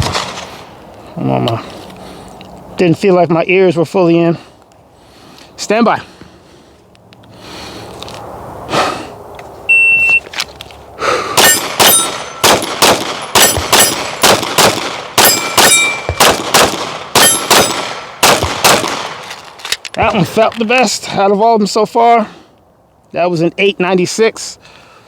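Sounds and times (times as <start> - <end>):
shot timer beep: 9.7 - 10.2
steel targets ringing: 11.4 - 12.6, 13.2 - 14.2, 15.2 - 16.3, 17.2 - 17.8
pistol firing rapid shots: 11.4 - 19.2.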